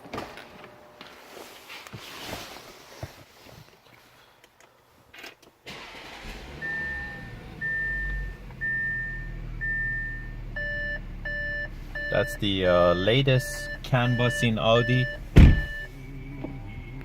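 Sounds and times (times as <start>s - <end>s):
car engine starting and idling: 5.7s - 17.0s
warning chime beeping: 6.6s - 17.0s.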